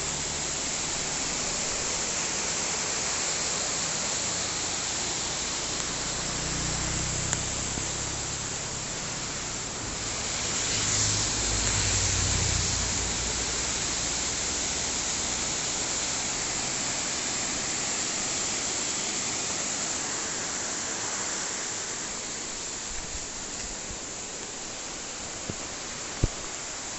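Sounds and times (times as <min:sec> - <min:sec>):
waterfall rushing: 0:00.0 - 0:26.9.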